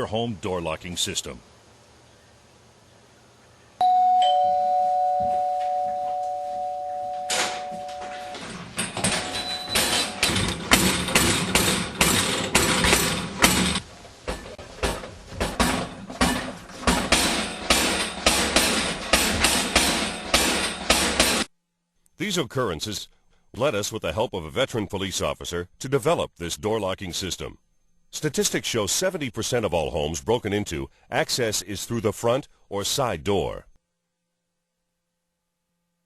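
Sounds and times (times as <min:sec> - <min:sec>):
two-tone doorbell chime: 0:03.8 - 0:08.5, 0:09.3 - 0:09.9
heavy banging on door: 0:07.4 - 0:21.5.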